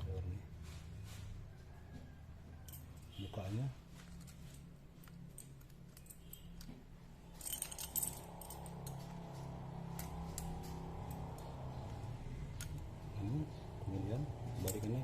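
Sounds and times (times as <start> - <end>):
keys jingling: 3.9 - 13.1, 14.5 - 15.0.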